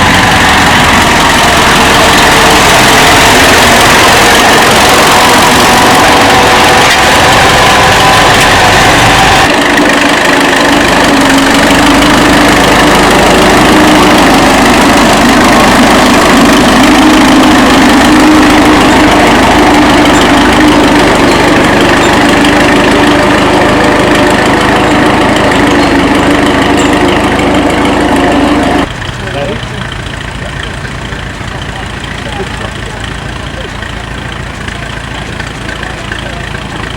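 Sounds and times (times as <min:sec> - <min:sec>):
tractor engine running: 0:00.0 - 0:36.9.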